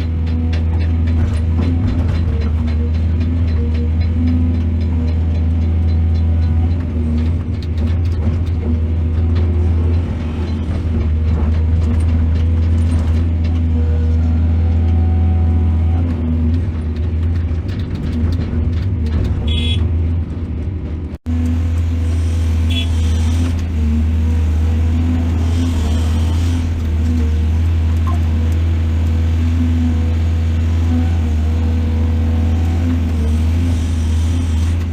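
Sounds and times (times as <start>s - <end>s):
excavator diesel engine drone: 0.0s - 34.9s.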